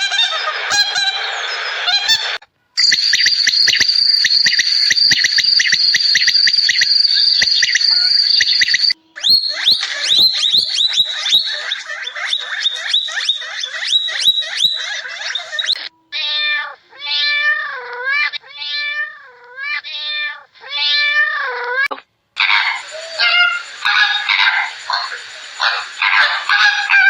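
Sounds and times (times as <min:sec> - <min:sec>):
high chirps and clicks: 0:02.8 - 0:15.9, 0:22.4 - 0:27.0
cat meowing: 0:15.8 - 0:22.0.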